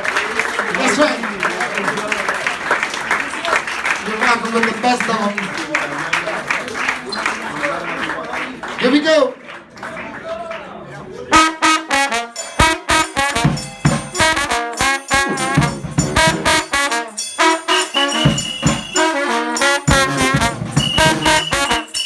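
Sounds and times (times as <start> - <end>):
brass band playing upbeat tune: 11.3 - 22.0
high held brass note: 11.3 - 22.0
drum hits: 12.6 - 22.0.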